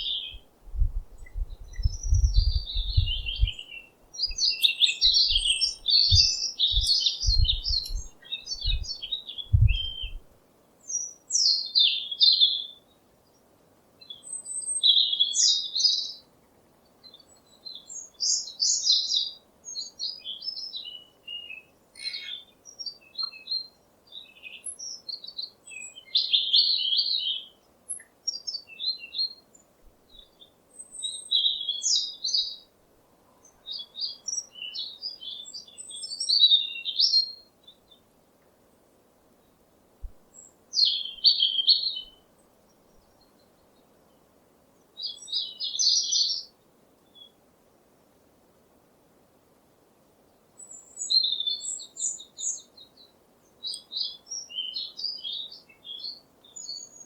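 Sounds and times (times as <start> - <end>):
small songbirds chirping: 0.0 - 48.2, 50.1 - 57.0
low thumps: 0.7 - 3.6, 6.1 - 8.9, 9.5 - 10.2.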